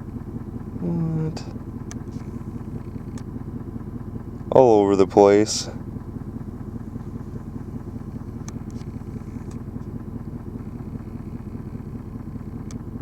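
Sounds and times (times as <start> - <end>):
vehicle engine idling: 0.0 - 13.0
faint ticks: 1.8 - 3.4, 8.0 - 13.0.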